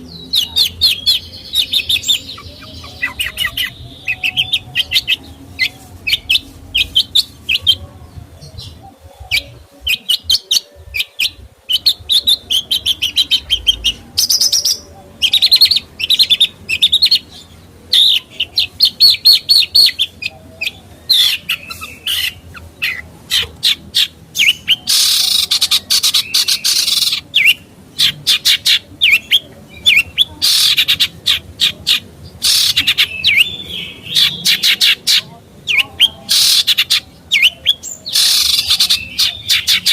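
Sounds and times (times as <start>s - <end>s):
harsh scratchy bird calls: 0.0s - 7.8s, 18.0s - 39.9s
songbird chattering song: 0.0s - 39.9s.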